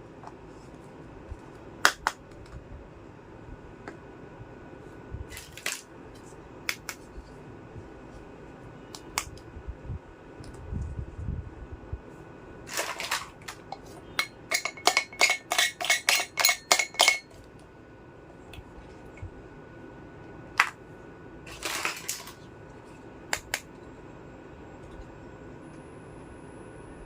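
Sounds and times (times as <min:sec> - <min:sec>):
toy dishes clinking: 0:12.7 - 0:17.4.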